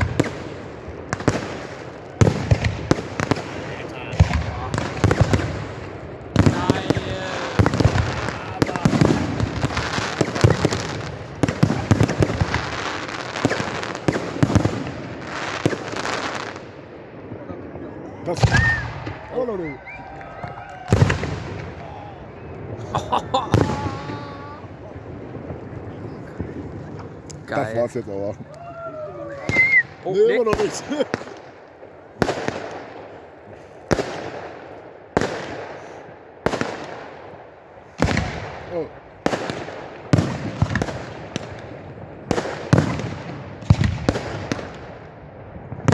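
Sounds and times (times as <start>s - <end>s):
fireworks crackling: 0.0s - 45.9s
fireworks shells bursting: 1.3s - 16.6s.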